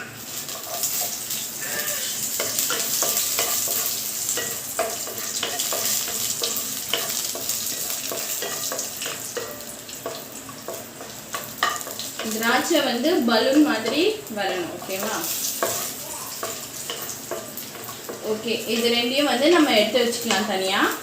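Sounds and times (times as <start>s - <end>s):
nuts frying in a pan sizzling: 0.0s - 21.0s
spoon scraping and clinking pan: 2.3s - 12.4s.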